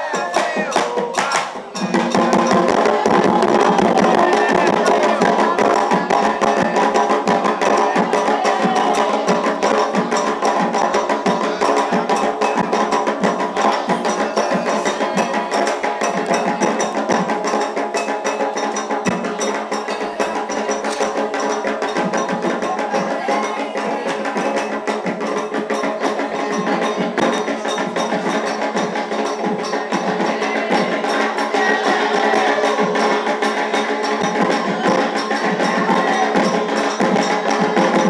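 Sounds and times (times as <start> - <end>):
rapid drum percussion: 0.0 - 38.0
sharp wood block strikes: 0.2 - 1.8.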